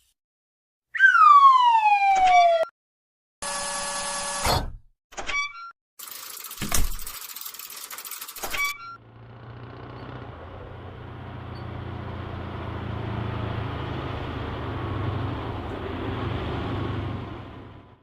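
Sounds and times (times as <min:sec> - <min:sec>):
low engine rumble: 0:09.0 - 0:18.0.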